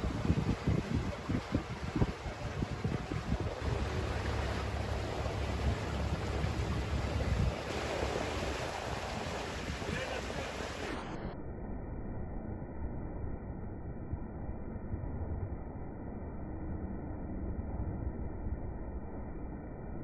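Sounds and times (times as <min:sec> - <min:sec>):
wind buffeting microphone: 0:00.0 - 0:11.0
rushing outdoor noise: 0:00.0 - 0:11.4.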